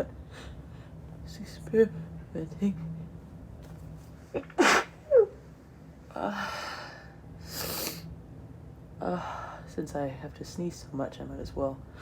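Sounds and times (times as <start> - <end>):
woman sneezing: 4.4 - 5.2
breathy hissing sounds: 7.4 - 8.1.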